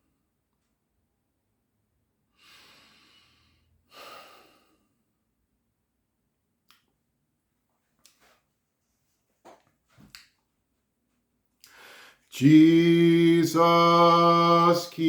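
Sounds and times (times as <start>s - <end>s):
man breathing: 2.3s - 5.2s, 11.6s - 12.4s.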